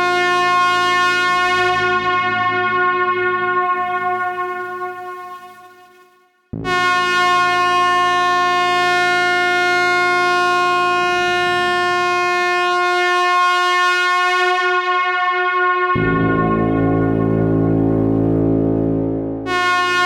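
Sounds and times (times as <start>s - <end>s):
truck air horn blast: 6.6s - 20.0s.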